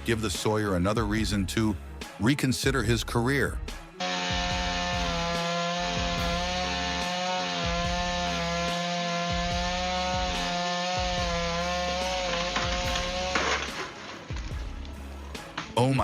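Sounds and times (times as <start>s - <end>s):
chainsaw cutting wood: 4.0s - 15.8s.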